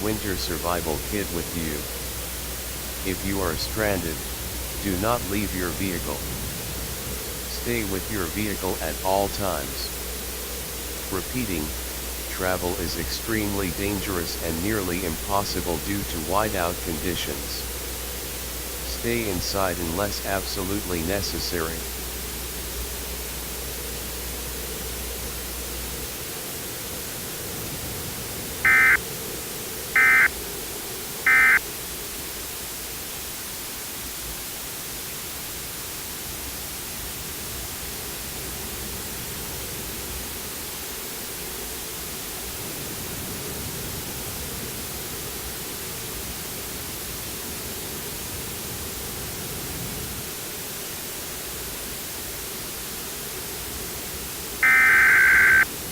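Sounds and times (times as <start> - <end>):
steady radio hiss: 0.0 - 55.9
digital data bursts: 28.6 - 29.0, 30.0 - 30.3, 31.3 - 31.6, 54.6 - 55.7.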